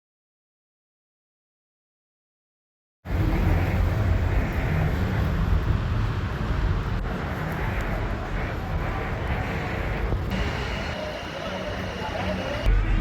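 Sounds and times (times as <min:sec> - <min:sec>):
outdoor background noise: 0:03.1 - 0:13.0.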